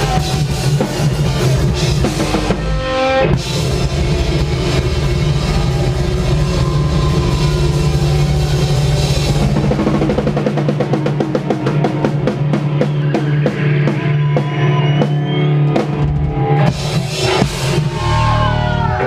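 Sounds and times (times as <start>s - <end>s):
held guitar and bass chord: 2.7s - 9.8s
drum hits: 15.8s - 18.3s.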